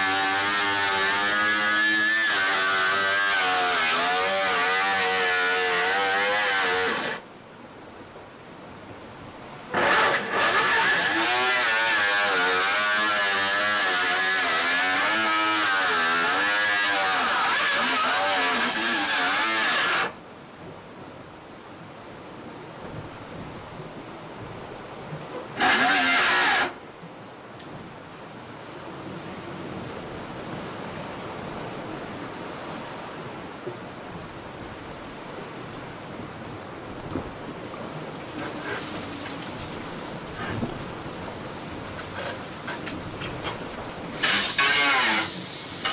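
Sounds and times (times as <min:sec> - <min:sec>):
power cutting tool cutting: 0:00.0 - 0:07.2, 0:09.8 - 0:20.1, 0:25.6 - 0:26.8, 0:44.2 - 0:45.9
rushing water: 0:00.0 - 0:45.9
wind: 0:00.0 - 0:45.9.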